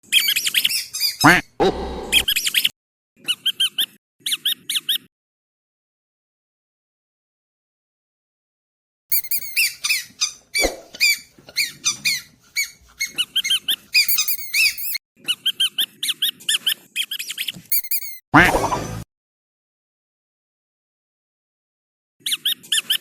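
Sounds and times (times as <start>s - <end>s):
squeaky dog toy squeaking: 0.1s - 2.7s, 9.1s - 16.6s, 17.2s - 18.7s.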